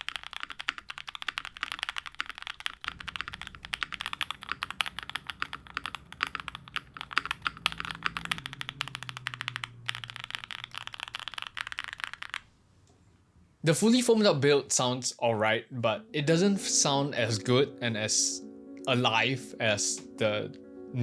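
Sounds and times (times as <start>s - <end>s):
fast mechanical keyboard typing: 0.0s - 12.5s.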